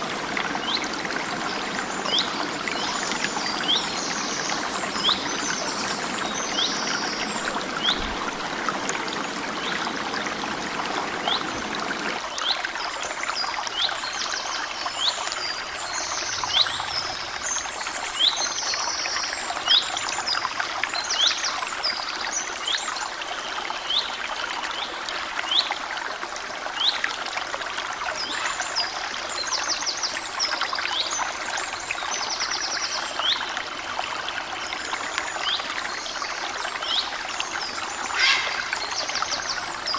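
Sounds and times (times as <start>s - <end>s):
stream trickling over stones: 0.0s - 39.9s
birds chirping and trilling: 15.8s - 18.9s, 37.9s - 39.9s.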